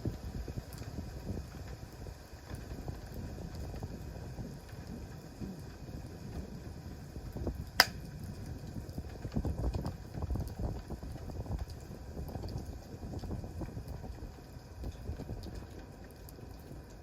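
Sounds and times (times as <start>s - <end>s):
campfire crackling: 4.6s - 17.0s
loud fire pop: 7.8s - 8.0s.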